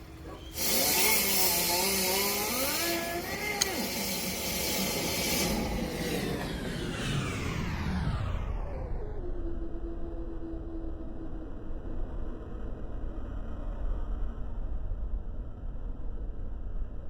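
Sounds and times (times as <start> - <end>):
motor over rushing air: 0.0 - 10.4
sharp click: 3.2 - 4.0.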